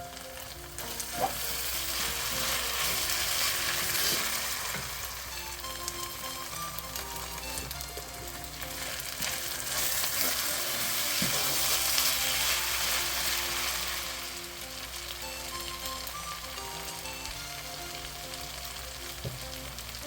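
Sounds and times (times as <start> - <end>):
vegetables sizzling in a pan: 0.0 - 20.0
spatula scraping: 0.9 - 4.9, 8.6 - 13.0.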